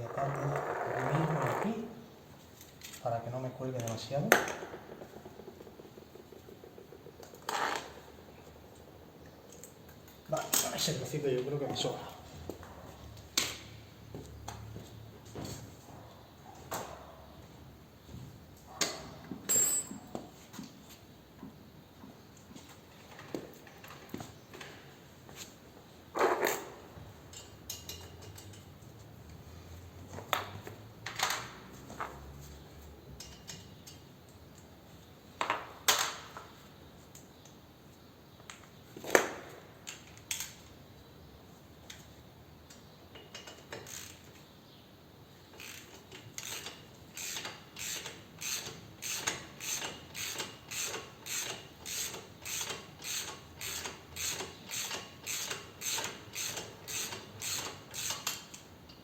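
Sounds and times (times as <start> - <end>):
ratchet wrench clicking: 27.3 - 28.8, 33.2 - 34.0, 43.2 - 44.3, 45.6 - 59.0.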